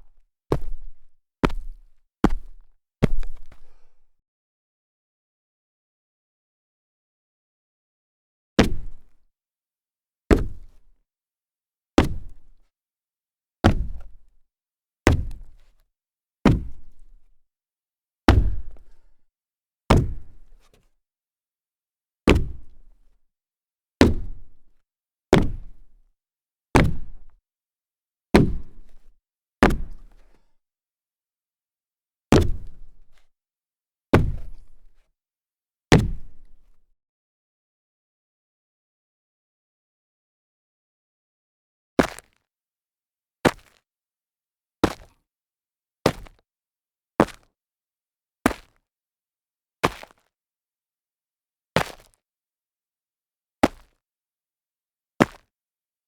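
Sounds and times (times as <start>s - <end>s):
sneaker jump landing thuds: 0.5s - 3.6s.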